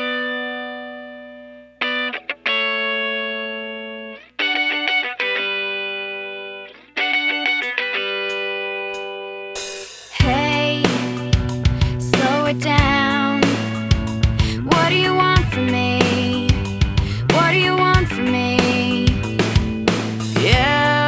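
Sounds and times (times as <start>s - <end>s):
slow guitar chords: 0.0s - 21.0s
band playing: 9.6s - 21.0s.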